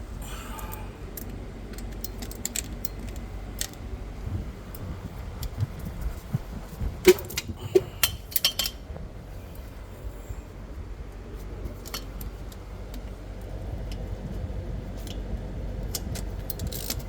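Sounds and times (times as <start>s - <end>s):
ratchet metal clicks and clinks: 0.6s - 3.8s, 15.8s - 17.0s.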